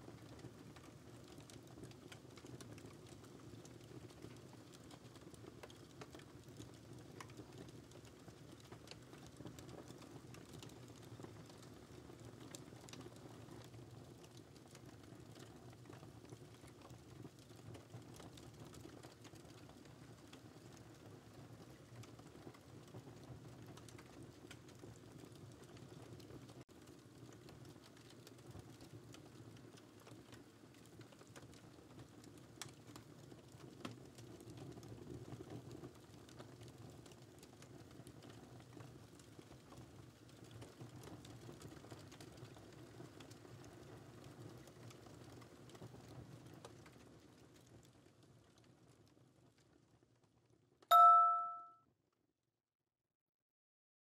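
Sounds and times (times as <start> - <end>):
timer bell chime: 50.9 - 51.7.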